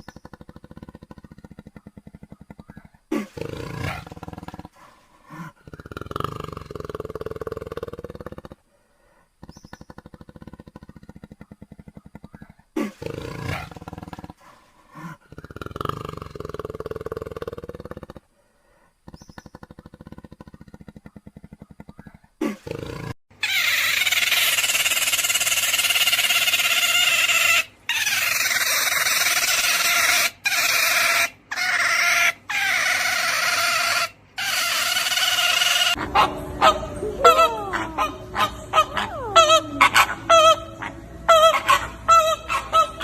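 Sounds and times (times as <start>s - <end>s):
animal sounds: 0.0s - 43.0s
long loud steady sound: 36.0s - 41.4s.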